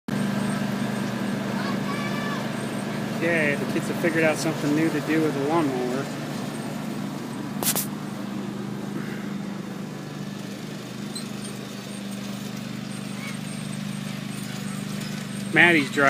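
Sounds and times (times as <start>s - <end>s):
riding mower engine humming: 0.1s - 16.0s
sharp click: 7.6s - 7.9s.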